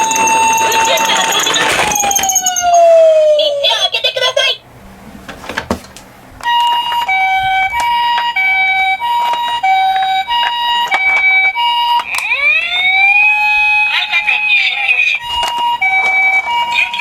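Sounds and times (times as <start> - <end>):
toy siren two-tone: 0.0 - 3.7, 6.5 - 17.0
rising wailing siren: 0.0 - 3.9, 6.4 - 17.0.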